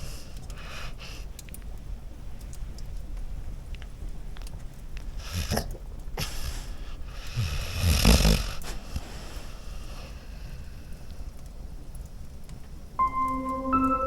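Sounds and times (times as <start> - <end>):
dog snoring: 5.2 - 10.8.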